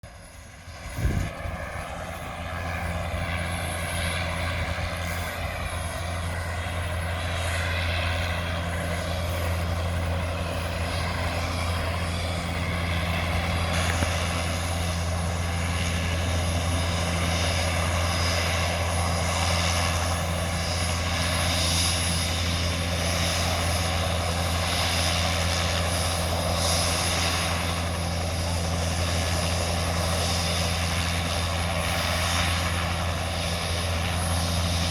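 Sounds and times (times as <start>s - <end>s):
helicopter rotor and engine: 0.0s - 34.9s.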